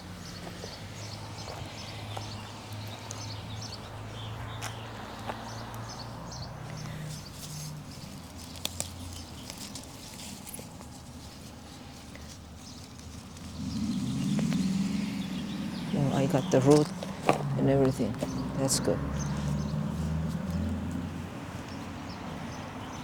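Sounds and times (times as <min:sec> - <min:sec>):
stones clicking and scraping: 0:16.7 - 0:17.5.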